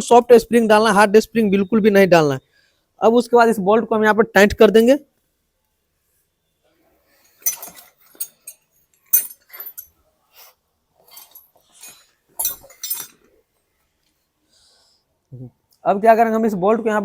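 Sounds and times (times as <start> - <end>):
metal tools clinking: 7.2 - 10.0, 11.0 - 13.3.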